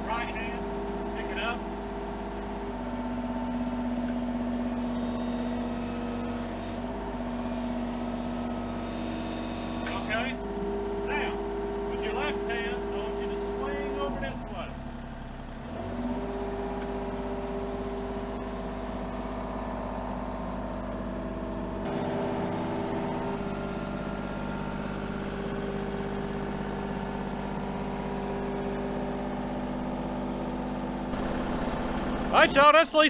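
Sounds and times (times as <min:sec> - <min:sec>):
excavator diesel engine running: 0:00.0 - 0:33.0.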